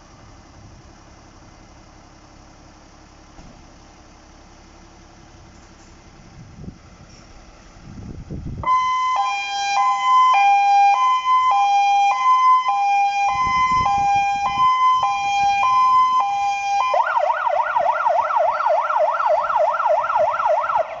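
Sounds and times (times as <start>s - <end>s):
engine idling: 0.0s - 21.0s
fire engine siren: 8.6s - 21.0s.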